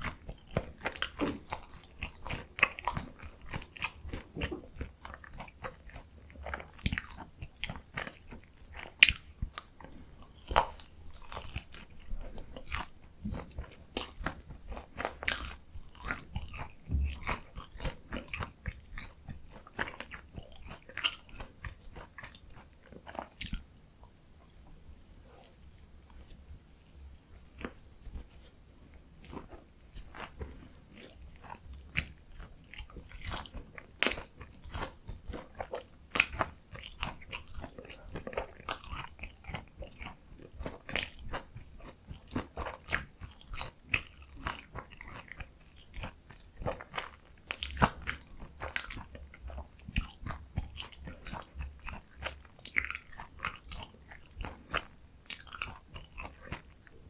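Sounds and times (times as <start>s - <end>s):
crunching and chewing: 0.0s - 57.0s.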